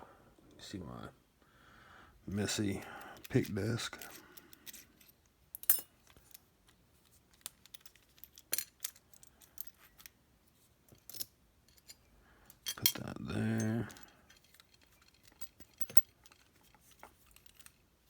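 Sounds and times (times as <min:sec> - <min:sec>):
small metal lock parts clicking: 0:03.2 - 0:10.2, 0:10.9 - 0:17.9.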